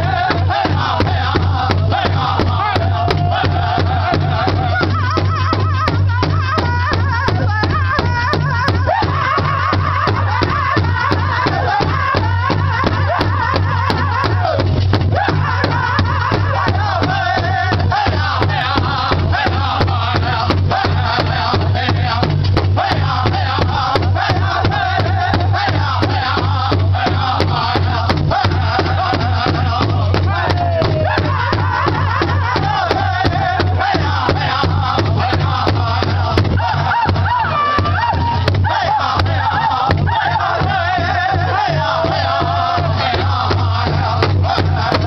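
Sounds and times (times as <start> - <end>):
drummers striking large drum: 0.0 - 45.0
singers chanting together: 0.0 - 45.0.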